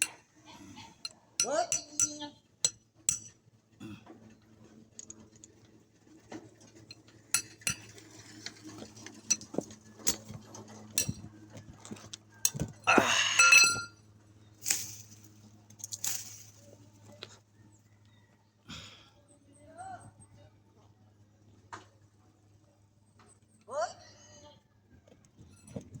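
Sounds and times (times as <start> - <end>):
ringing metal clatter: 1.0 - 3.4, 6.8 - 11.3, 12.4 - 14.0
metal tools clinking: 1.4 - 3.3, 6.8 - 8.3, 9.2 - 11.3, 12.4 - 13.9, 14.6 - 16.6.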